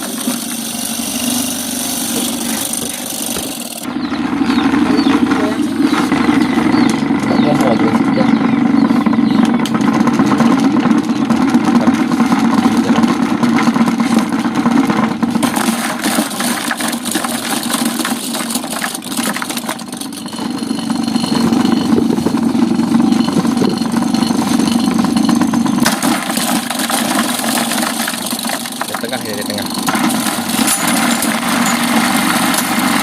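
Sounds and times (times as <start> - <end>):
small engine running: 0.0 - 33.0
crackling of chopping: 9.4 - 33.0.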